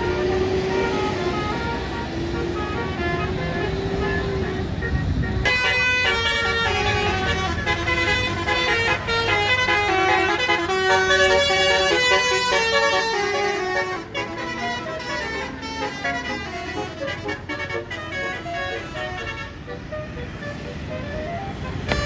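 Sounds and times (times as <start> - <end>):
low engine rumble: 0.0 - 22.0
multi-note air horn melody: 0.0 - 22.0.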